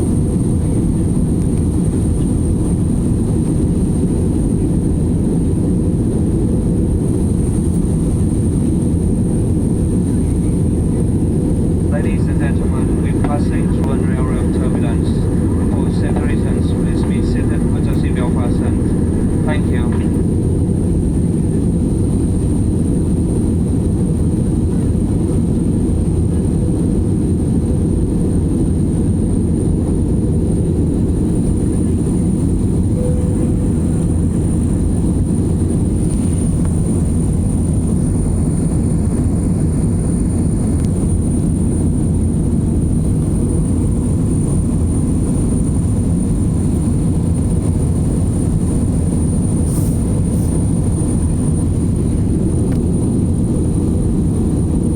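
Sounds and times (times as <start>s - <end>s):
airliner cabin engine rumble: 0.0s - 54.9s
faint high whine: 8.7s - 21.8s, 30.9s - 38.0s.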